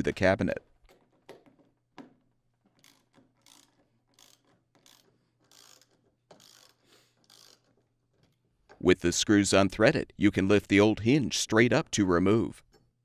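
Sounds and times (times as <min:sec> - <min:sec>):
socket wrench ratcheting: 0:02.7 - 0:08.8.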